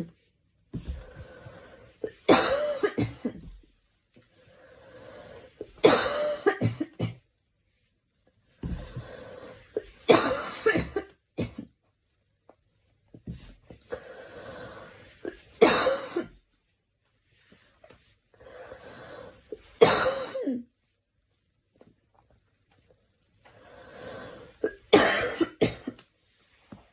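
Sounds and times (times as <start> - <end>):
girl coughing: 2.0 - 3.5, 5.7 - 7.2, 9.8 - 11.7, 15.6 - 16.4, 19.8 - 20.7, 24.6 - 26.0
drawn-out breath: 13.9 - 15.2, 23.4 - 24.6.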